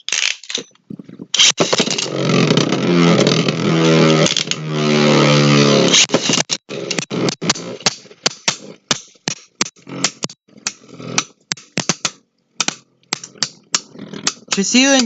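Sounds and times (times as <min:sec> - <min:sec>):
sharp clicks and clacks: 0:05.9 - 0:15.0.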